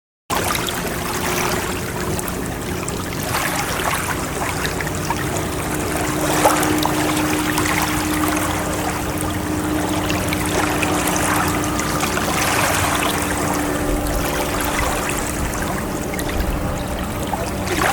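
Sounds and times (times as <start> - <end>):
water washing and splashing: 0.3 - 17.9
steady low hum: 0.4 - 17.9.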